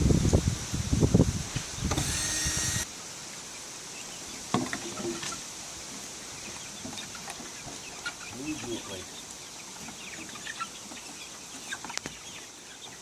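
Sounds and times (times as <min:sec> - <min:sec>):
mechanical whirring: 0:01.9 - 0:02.8
hens clucking: 0:04.1 - 0:13.0.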